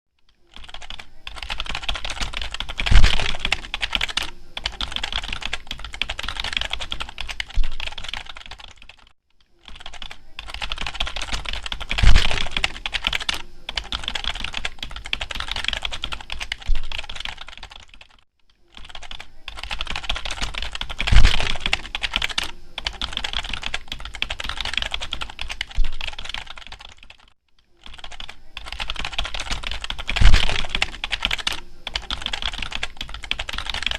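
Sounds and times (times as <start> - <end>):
fast typing on keyboard: 0.3 - 33.9.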